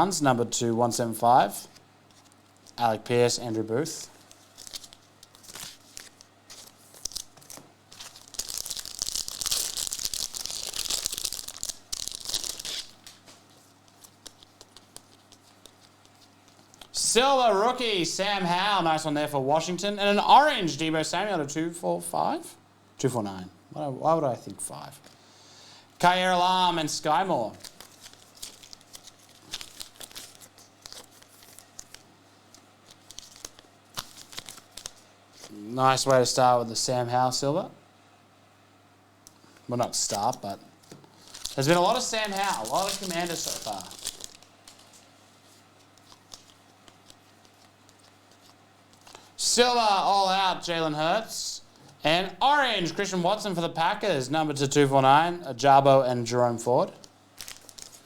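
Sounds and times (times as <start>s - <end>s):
crinkly wrapper tearing: 4.2s - 16.9s, 27.5s - 35.6s, 40.0s - 45.1s, 45.8s - 50.2s, 57.0s - 58.0s.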